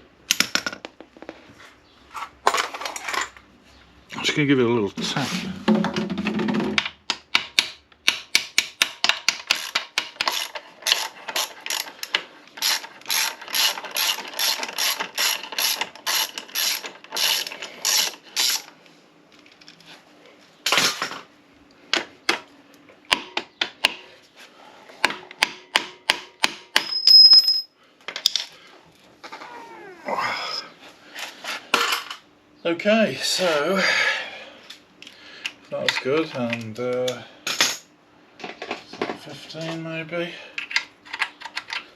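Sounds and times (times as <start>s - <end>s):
ratchet wrench clicking: 9.4s - 12.0s, 12.6s - 18.7s.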